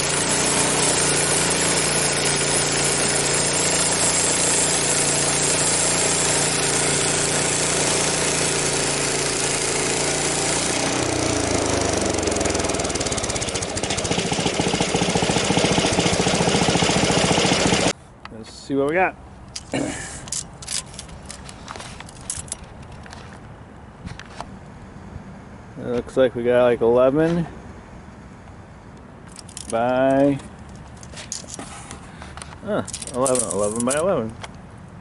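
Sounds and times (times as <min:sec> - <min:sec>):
small gasoline engine running: 0:00.0 - 0:17.9.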